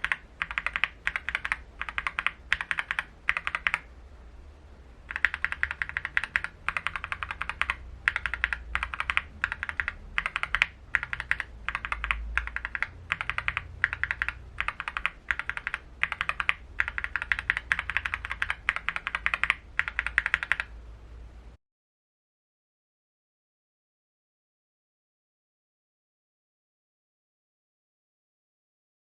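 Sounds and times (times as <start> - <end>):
mechanical keyboard typing: 0.0 - 3.9, 5.1 - 20.7.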